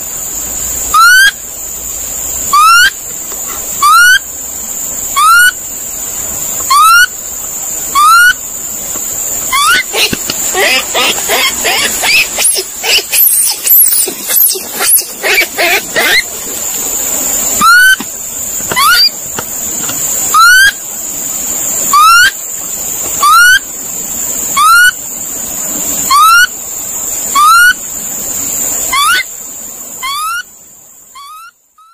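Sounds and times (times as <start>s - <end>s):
high-pitched hiss: 0.0s - 31.9s
monkey squealing chatter: 0.9s - 1.4s, 2.5s - 3.0s, 3.8s - 4.2s, 5.2s - 5.6s, 6.7s - 7.1s, 7.9s - 8.4s, 9.5s - 16.3s, 17.6s - 18.0s, 18.7s - 19.2s, 20.3s - 20.8s, 21.9s - 22.4s, 23.2s - 23.6s, 24.6s - 25.0s, 26.1s - 26.5s, 27.4s - 27.8s, 28.9s - 29.3s, 30.0s - 30.5s, 31.2s - 31.9s
monkey whistled calls: 0.9s - 1.4s, 2.5s - 3.0s, 3.8s - 4.3s, 5.1s - 5.6s, 6.7s - 7.1s, 7.9s - 8.4s, 9.5s - 16.3s, 17.6s - 18.0s, 18.7s - 19.2s, 20.3s - 20.8s, 21.9s - 22.4s, 23.2s - 23.6s, 24.6s - 25.0s, 26.1s - 26.5s, 27.3s - 27.8s, 28.9s - 29.3s, 30.0s - 30.5s, 31.1s - 31.9s.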